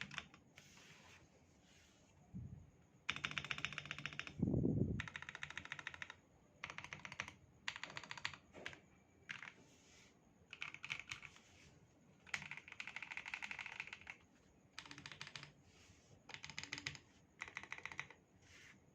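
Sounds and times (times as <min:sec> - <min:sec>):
mechanical keyboard typing: 0:00.0 - 0:00.4, 0:03.1 - 0:04.4, 0:05.0 - 0:09.6, 0:10.5 - 0:11.4, 0:12.2 - 0:14.2, 0:14.8 - 0:15.6, 0:16.3 - 0:18.2.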